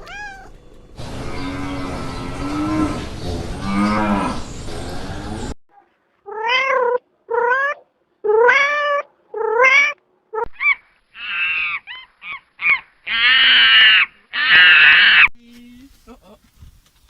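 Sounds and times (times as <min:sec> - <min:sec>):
animal high-pitched calls: 0:00.0 - 0:04.4, 0:06.3 - 0:15.3.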